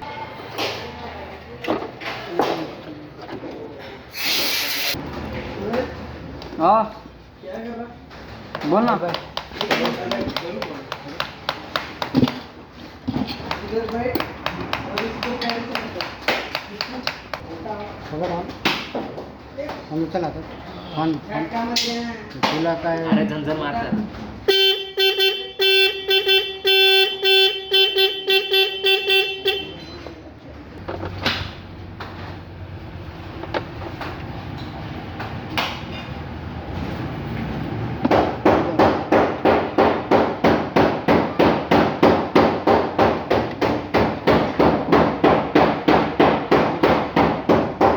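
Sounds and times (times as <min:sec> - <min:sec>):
car horn honks: 0:24.4 - 0:30.1
sharp knocks: 0:38.0 - 0:47.9.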